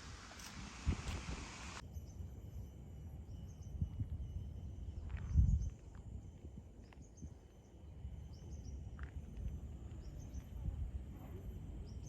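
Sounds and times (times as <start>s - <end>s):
insects droning: 0.0s - 5.1s.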